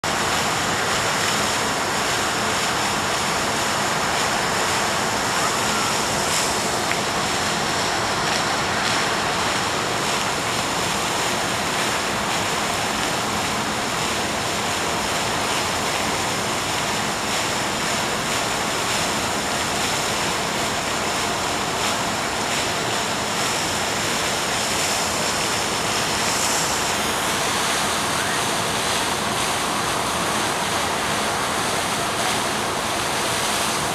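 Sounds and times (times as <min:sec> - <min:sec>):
waterfront rushing ambience: 0:00.0 - 0:33.9.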